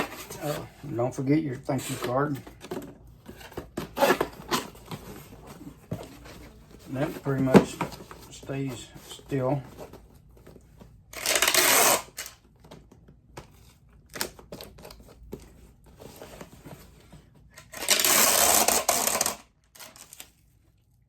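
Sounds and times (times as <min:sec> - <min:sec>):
cardboard clicks and rustles: 0:00.0 - 0:20.6
packing tape pulled off roll: 0:11.2 - 0:12.4, 0:17.6 - 0:20.3.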